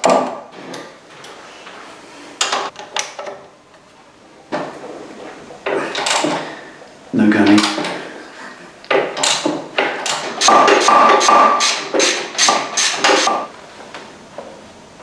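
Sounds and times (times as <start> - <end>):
hammer striking metal: 9.2 - 13.5.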